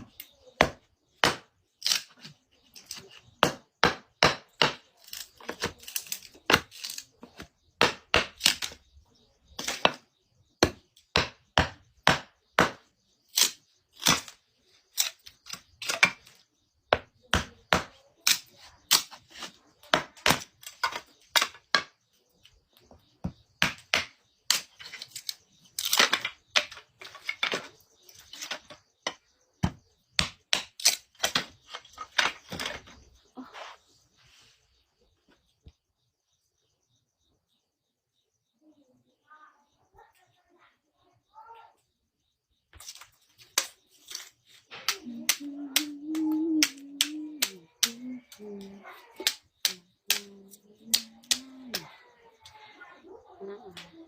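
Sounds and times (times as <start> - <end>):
firewood chopping strikes: 0.6 - 2.0, 10.6 - 12.8.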